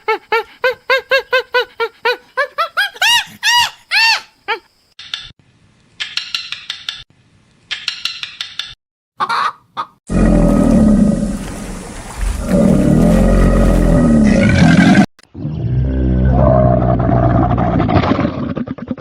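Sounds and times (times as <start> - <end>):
large animal roaring: 10.1 - 19.0.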